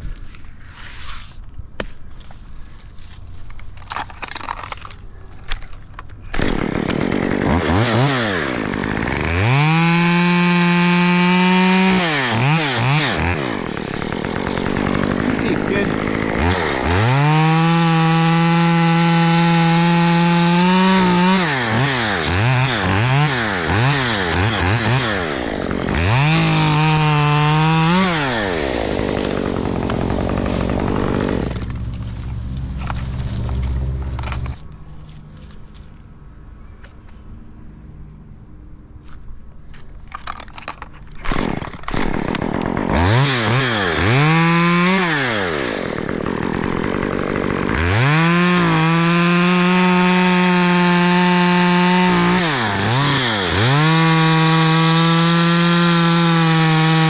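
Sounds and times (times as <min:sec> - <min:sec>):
chainsaw cutting wood: 0:06.2 - 0:34.6, 0:41.2 - 0:57.0.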